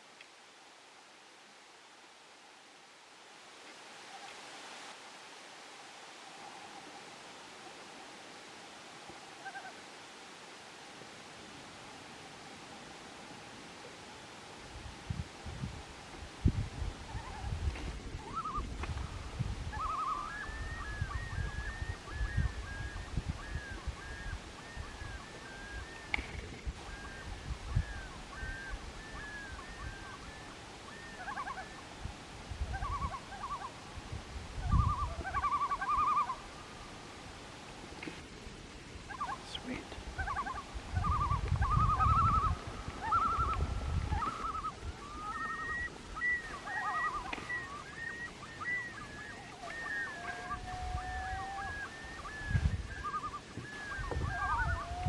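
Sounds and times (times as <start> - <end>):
loons calling: 17.0 - 33.9, 34.6 - 37.4, 38.9 - 55.0.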